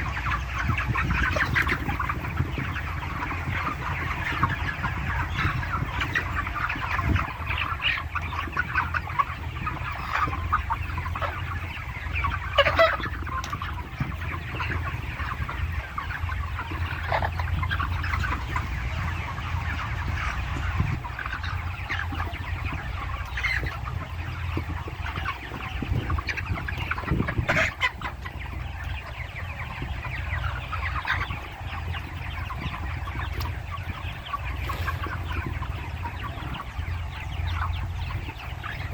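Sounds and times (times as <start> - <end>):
chickens clucking: 0.0 - 38.9.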